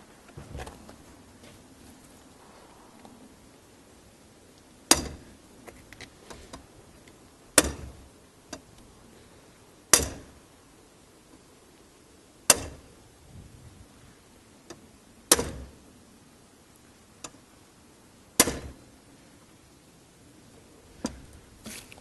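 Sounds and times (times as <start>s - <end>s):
hammer clanging on steel lock: 9.9s - 10.3s, 18.4s - 18.8s.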